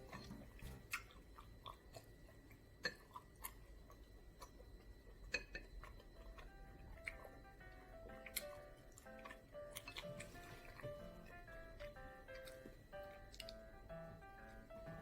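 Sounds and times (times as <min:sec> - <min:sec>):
person chewing with mouth smacks: 0:00.0 - 0:07.4, 0:08.1 - 0:11.4, 0:13.3 - 0:13.6.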